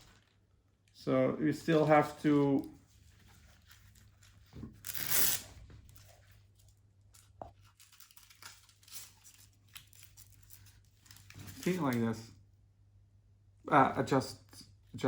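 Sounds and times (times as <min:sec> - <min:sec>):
belt rustling: 0:01.7 - 0:11.8
hook-and-loop strip ripping: 0:03.8 - 0:06.1, 0:07.6 - 0:12.0.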